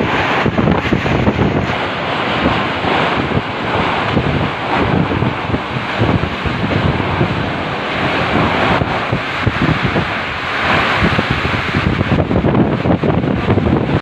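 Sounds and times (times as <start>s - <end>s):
heavy rain rushing: 0.0s - 14.0s
wind buffeting microphone: 0.0s - 14.0s.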